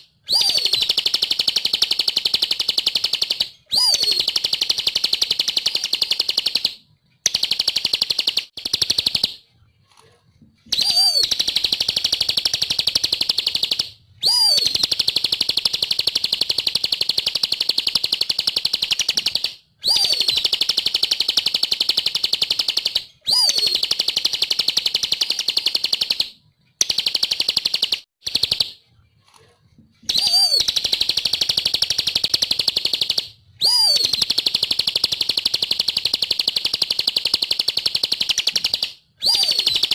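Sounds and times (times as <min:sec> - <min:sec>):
bird singing fast trills: 0:00.3 - 0:06.7, 0:10.7 - 0:26.2, 0:30.1 - 0:39.9.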